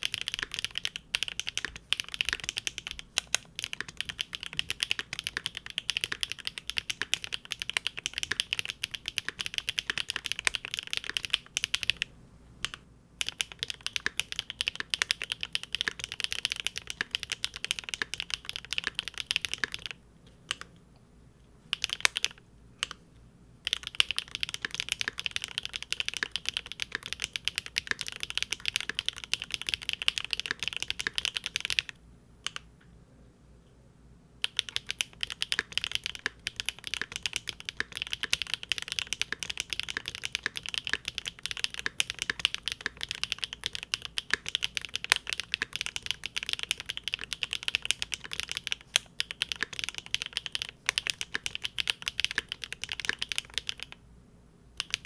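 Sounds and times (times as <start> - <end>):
mechanical keyboard typing: 0.0 - 20.7, 21.7 - 23.0, 23.6 - 32.7, 34.4 - 54.0, 54.8 - 55.0.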